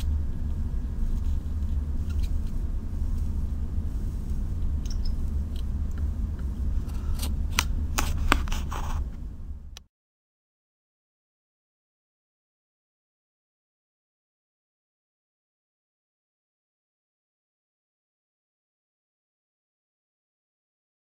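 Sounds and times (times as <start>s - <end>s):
steady low hum: 0.0s - 9.9s.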